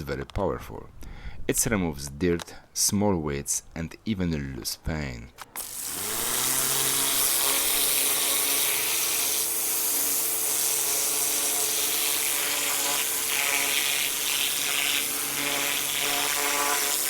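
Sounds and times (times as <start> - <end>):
pressure washer motor hum: 5.5 - 17.0
high-pressure water jet hissing: 5.6 - 17.0.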